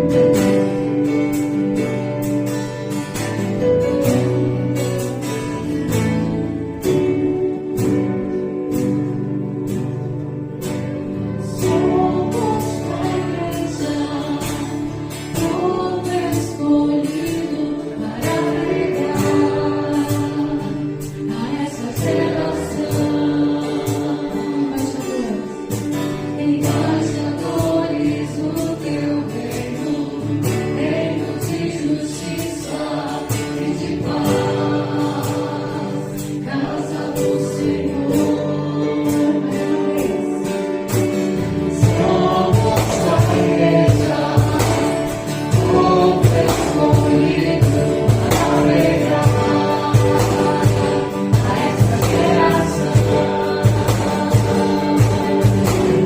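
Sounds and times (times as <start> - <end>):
guitar: 0.0 - 56.0
voices singing together: 11.4 - 56.0
percussion beat: 41.0 - 56.0.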